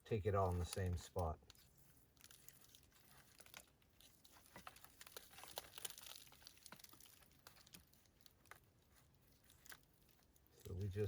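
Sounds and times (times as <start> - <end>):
moss crackling and rustling: 0.0 - 11.0.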